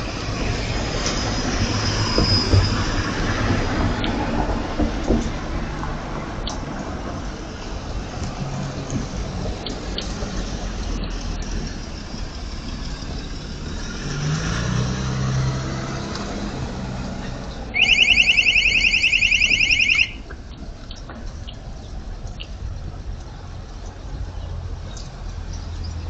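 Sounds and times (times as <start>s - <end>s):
electronic alarm warbling: 17.7s - 20.2s.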